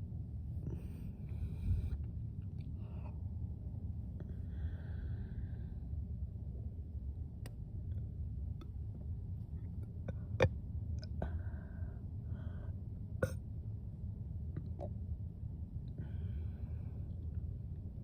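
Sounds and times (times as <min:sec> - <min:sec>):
steady low rumble: 0:00.0 - 0:18.0.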